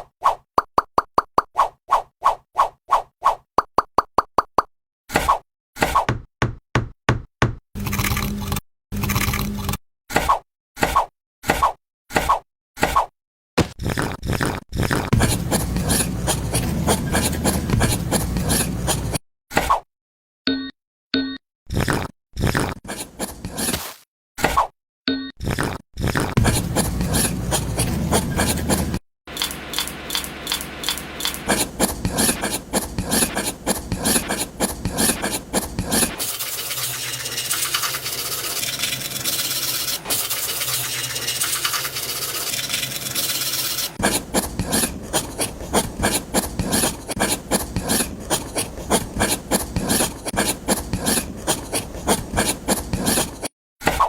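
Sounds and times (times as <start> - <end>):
abrasive strokes on wood: 15.1 - 19.2, 26.4 - 29.0, 31.2 - 53.5.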